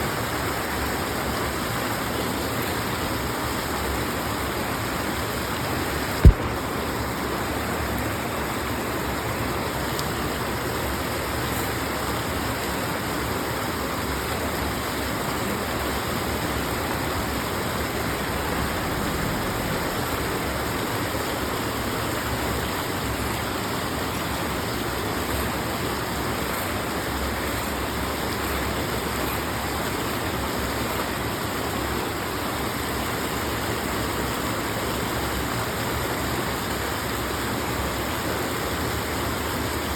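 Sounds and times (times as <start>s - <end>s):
creek water flowing: 0.0s - 39.9s
sharp knock: 6.2s - 6.7s.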